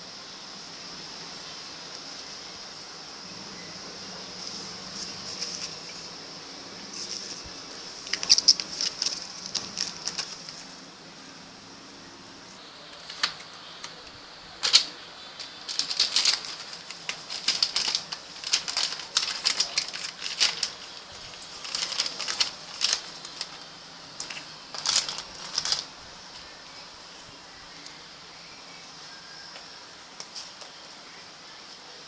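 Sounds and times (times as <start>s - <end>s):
book packaging crackling and rustling: 4.3s - 6.1s, 6.9s - 11.0s, 12.5s - 26.8s.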